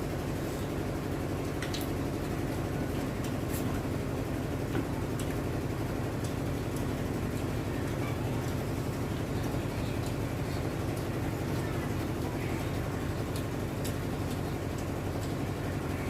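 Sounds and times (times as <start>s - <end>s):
low room rumble: 0.0s - 16.0s
faint eating clicks: 4.9s - 16.0s.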